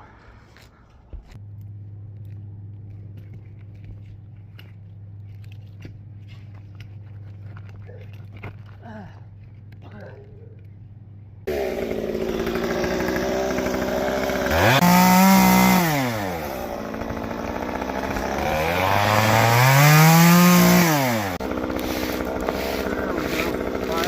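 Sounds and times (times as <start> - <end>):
chainsaw idling and revving: 11.4 - 24.0.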